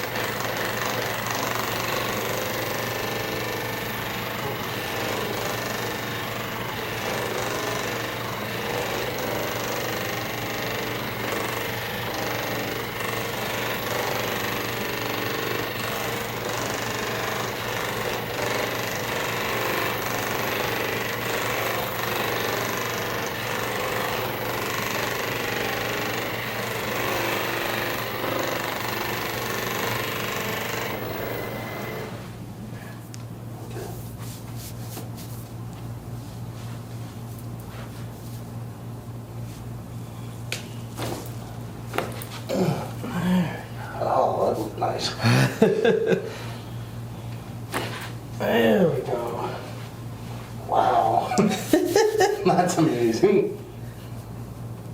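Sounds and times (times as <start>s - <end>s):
massage gun hammering buzz: 0.0s - 32.2s.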